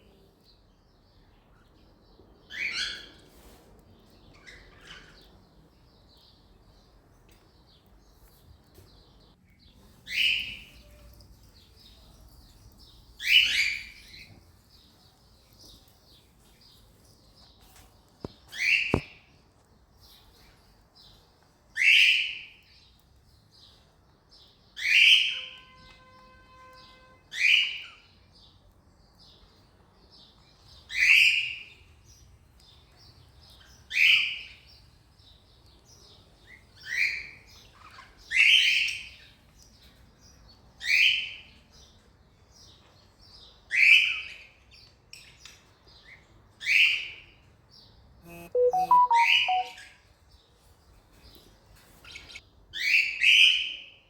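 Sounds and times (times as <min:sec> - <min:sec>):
lower pitched bird notes: 0:48.3 - 0:49.8.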